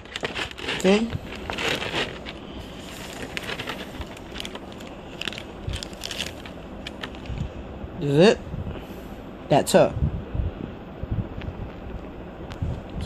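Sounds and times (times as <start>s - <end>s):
plastic packaging crinkling: 0.0s - 7.5s.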